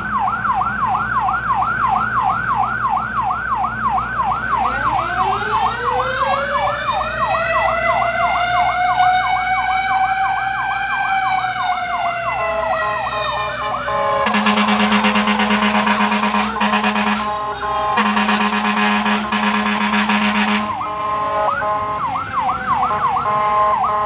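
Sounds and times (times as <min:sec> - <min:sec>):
wailing siren: 0:00.0 - 0:24.0
electronic siren yelping: 0:01.5 - 0:23.4
loud buzzing horn: 0:13.6 - 0:22.0.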